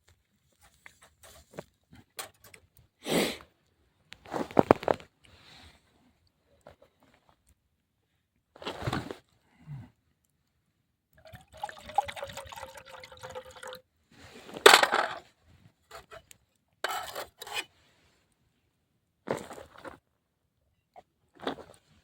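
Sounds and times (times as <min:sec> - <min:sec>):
liquid pouring into container: 0:11.2 - 0:13.8.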